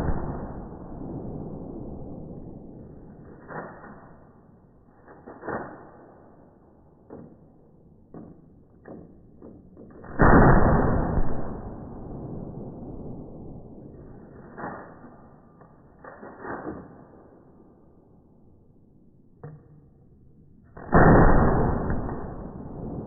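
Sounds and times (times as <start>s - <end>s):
slowed gunshot boom: 0.0s - 4.5s, 9.9s - 15.7s, 20.8s - 23.0s.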